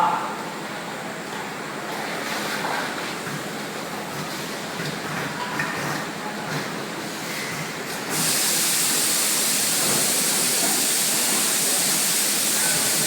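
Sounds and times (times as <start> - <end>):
filling machine running: 8.0 - 13.0
loud steady hiss: 8.0 - 13.0.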